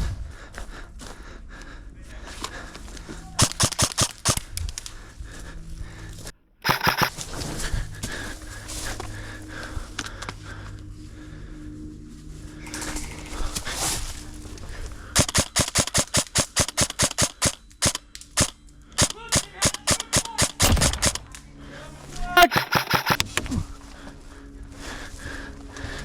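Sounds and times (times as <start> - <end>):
airsoft guns firing: 3.4 - 4.6, 6.6 - 7.2, 15.2 - 21.3, 22.4 - 23.2.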